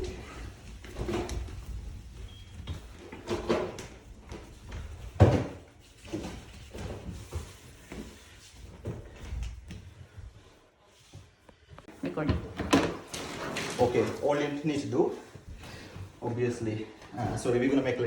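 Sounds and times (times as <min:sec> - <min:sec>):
objects knocking and clunking: 0:00.0 - 0:10.0, 0:11.8 - 0:14.5.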